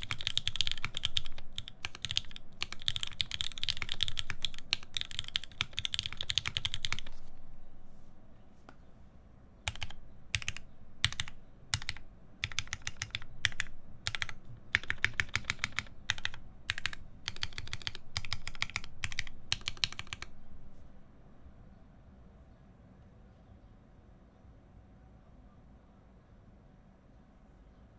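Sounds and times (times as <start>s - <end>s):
typing on mechanical keyboard: 0.0s - 7.4s, 9.7s - 20.8s.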